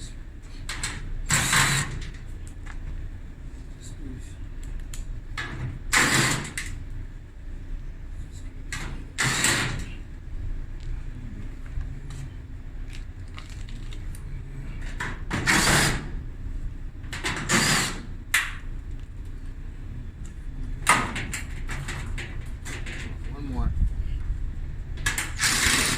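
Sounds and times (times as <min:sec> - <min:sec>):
cordless drill running: 0:15.4 - 0:16.1, 0:17.5 - 0:18.1, 0:25.4 - 0:25.9.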